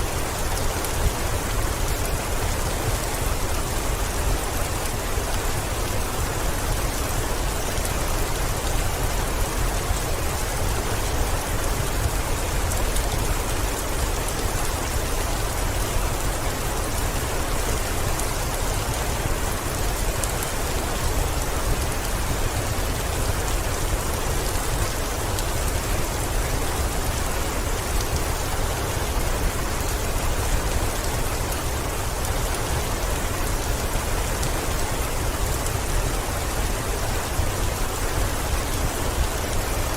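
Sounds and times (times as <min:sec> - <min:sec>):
heavy rain on a window: 0:00.0 - 0:39.9.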